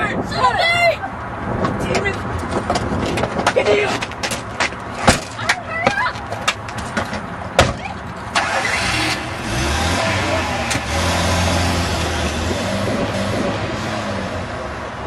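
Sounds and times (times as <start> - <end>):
car engine starting and running: 8.0 - 15.0.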